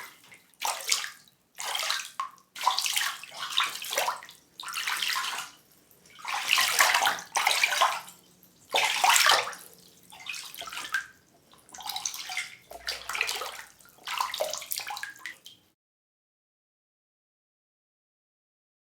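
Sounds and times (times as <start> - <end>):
water rushing and splashing: 2.8 - 15.1.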